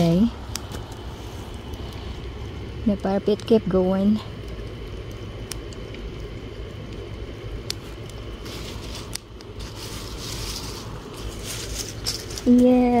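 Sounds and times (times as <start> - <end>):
fire crackling and popping: 0.0 - 13.0
fire hissing: 0.0 - 13.0.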